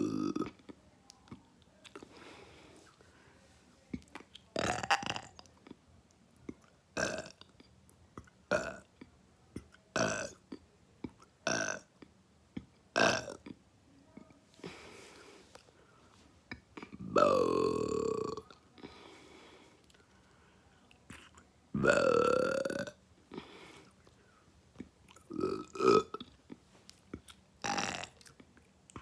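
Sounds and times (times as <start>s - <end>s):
person burping: 0.0s - 0.6s, 4.6s - 5.3s, 7.0s - 7.4s, 8.5s - 8.8s, 10.0s - 10.4s, 11.4s - 11.9s, 13.0s - 13.6s, 16.8s - 18.6s, 21.8s - 23.5s, 25.1s - 26.3s, 27.6s - 28.2s.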